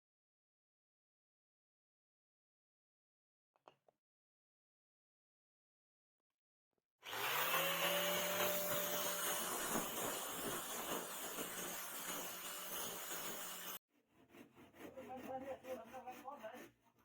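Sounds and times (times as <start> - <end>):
electric power tool motor: 7.0 - 13.8.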